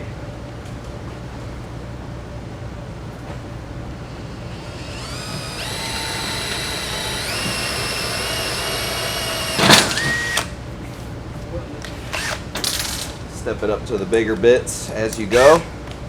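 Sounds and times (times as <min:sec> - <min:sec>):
power drill whining: 0:04.5 - 0:10.5, 0:12.2 - 0:12.4.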